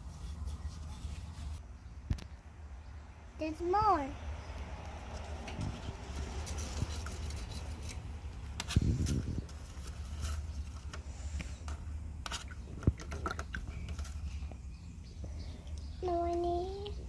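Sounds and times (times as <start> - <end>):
paintbrushes and pots tapping: 5.1 - 14.6.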